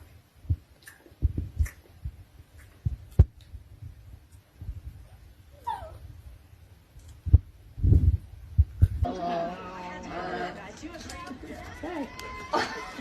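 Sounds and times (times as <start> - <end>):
dull low thumps: 0.5 - 5.0, 7.2 - 9.1
dog whimpering: 5.6 - 6.0.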